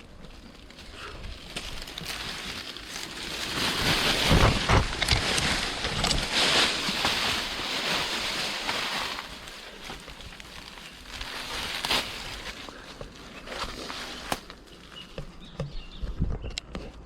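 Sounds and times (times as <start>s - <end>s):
wind buffeting microphone: 15.4s - 16.7s.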